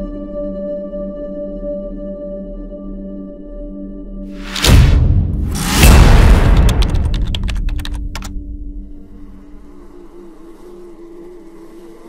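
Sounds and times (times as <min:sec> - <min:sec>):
deep rumble: 0:04.4 - 0:09.8
rapid sharp clicks: 0:05.5 - 0:08.4
faint wavering buzz: 0:08.4 - 0:12.0.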